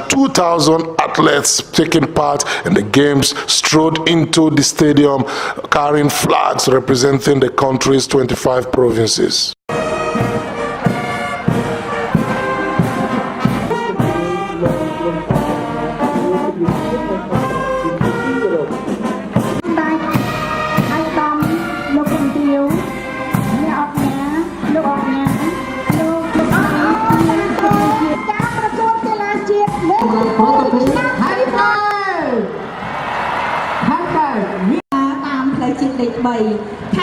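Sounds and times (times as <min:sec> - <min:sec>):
brass-led music with steady beat: 0:09.7 - 0:30.1.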